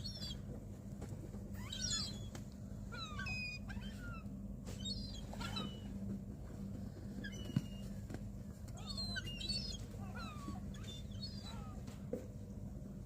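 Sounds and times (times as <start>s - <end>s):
seagulls calling: 0.0s - 0.5s, 1.6s - 6.0s, 7.1s - 8.0s, 8.8s - 11.8s.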